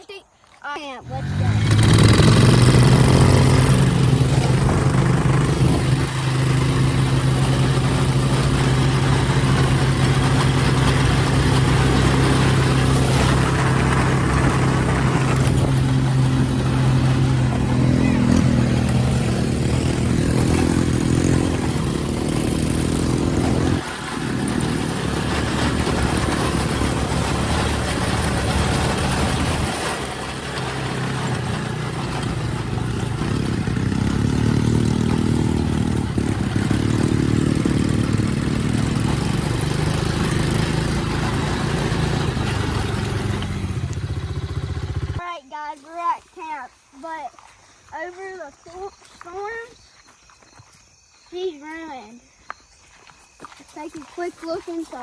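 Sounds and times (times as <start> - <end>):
off-road vehicle engine running: 0.1 - 45.4.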